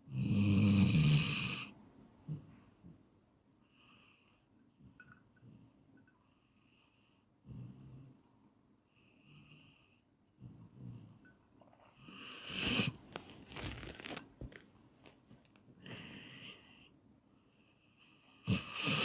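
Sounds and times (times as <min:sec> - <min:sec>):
person snoring: 0:00.1 - 0:01.7, 0:12.0 - 0:13.0, 0:18.5 - 0:19.0
rustling and crackling clicks: 0:13.0 - 0:15.7.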